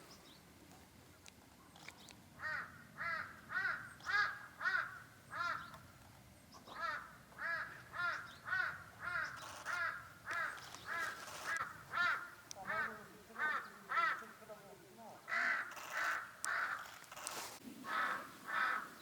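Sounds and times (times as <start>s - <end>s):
crows cawing: 2.4s - 5.8s, 6.7s - 14.5s, 15.2s - 19.0s.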